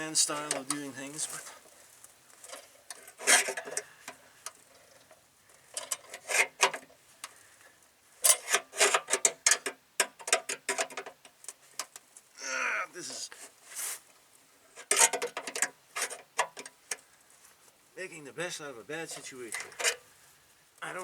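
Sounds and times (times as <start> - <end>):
metal rasping scrapes and knocks: 2.5 - 3.8.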